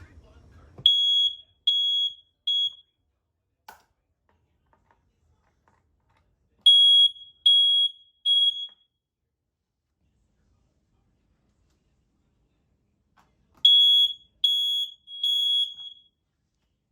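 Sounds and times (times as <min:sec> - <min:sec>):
smoke alarm beeping: 0:00.8 - 0:02.9, 0:06.7 - 0:09.0, 0:13.6 - 0:16.2.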